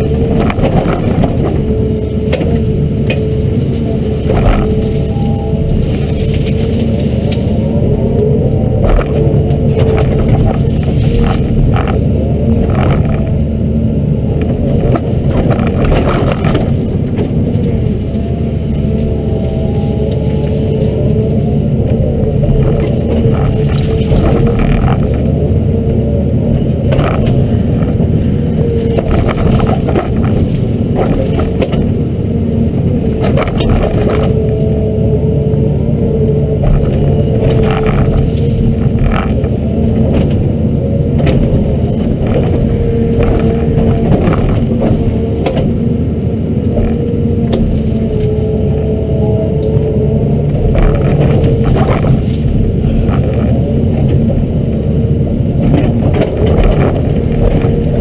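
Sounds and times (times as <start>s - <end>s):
excavator diesel engine running: 0.0s - 58.0s
hydraulic whine: 0.0s - 58.0s
rake knocking and scraping brush: 8.7s - 13.4s.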